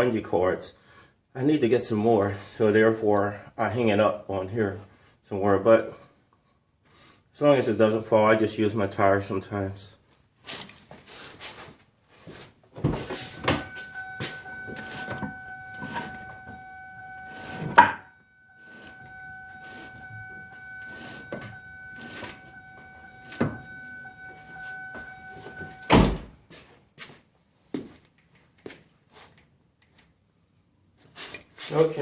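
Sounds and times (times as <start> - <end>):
steady high-pitched tone: 12.9 - 26.2
heavy thud: 24.7 - 26.4.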